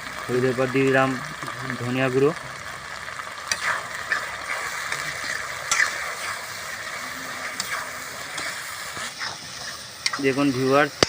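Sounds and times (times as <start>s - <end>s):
masala sizzling in hot oil: 0.0s - 11.0s
stirring ticks: 3.5s - 6.4s.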